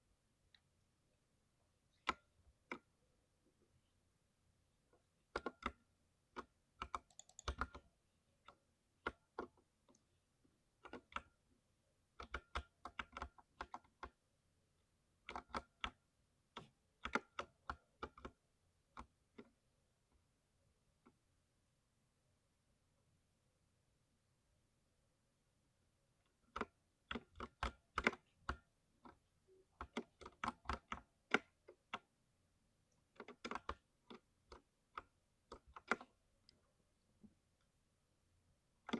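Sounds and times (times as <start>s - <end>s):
mechanical keyboard typing: 6.4s - 7.8s, 33.1s - 36.1s.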